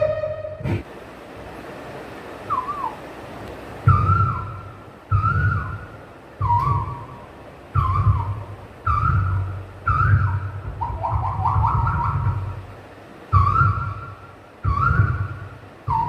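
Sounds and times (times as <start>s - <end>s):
bird whistled calls: 2.4s - 3.0s, 3.9s - 12.6s, 13.3s - 16.0s.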